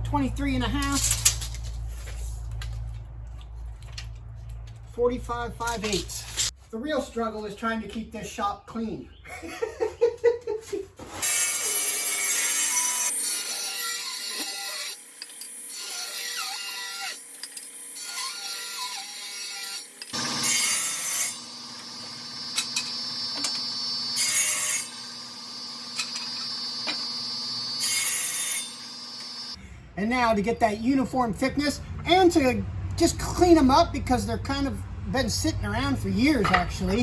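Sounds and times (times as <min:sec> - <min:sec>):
power saw cutting wood: 0:11.0 - 0:29.6.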